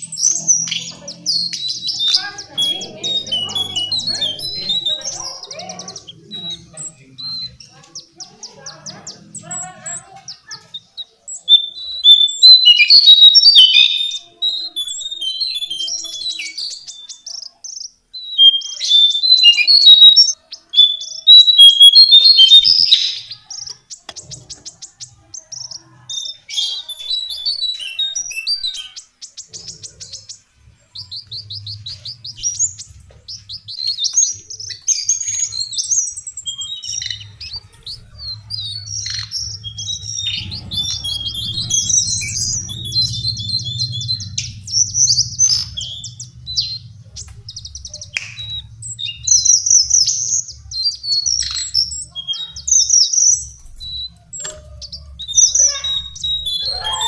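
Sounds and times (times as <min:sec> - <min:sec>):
bird singing fast high chirps: 0:00.0 - 0:57.0
low hum: 0:38.1 - 0:51.0.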